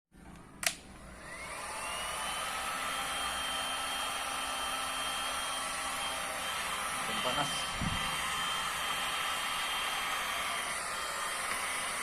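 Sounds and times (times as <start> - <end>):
hair dryer switch click: 0.6 - 0.8
hair dryer motor whine: 1.0 - 12.0.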